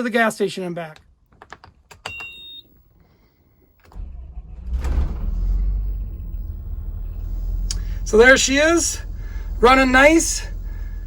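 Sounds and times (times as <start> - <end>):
diesel engine running: 3.9 - 11.0.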